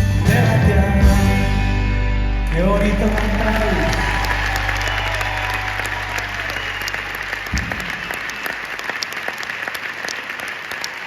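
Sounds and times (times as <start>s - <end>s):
audience applauding: 2.4s - 11.0s
low thump: 7.5s - 8.1s.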